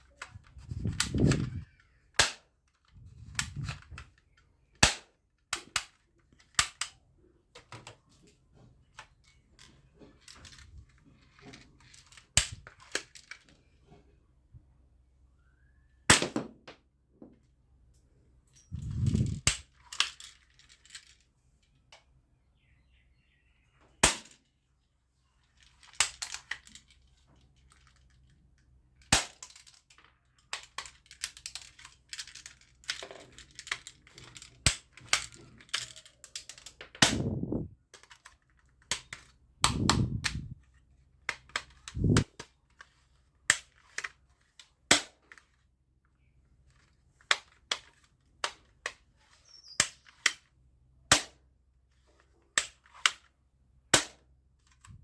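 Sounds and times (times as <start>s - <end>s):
toy gun cracks: 0.2s - 2.5s, 4.8s - 7.0s, 24.0s - 24.4s, 25.8s - 26.9s, 29.0s - 29.8s, 30.5s - 37.4s.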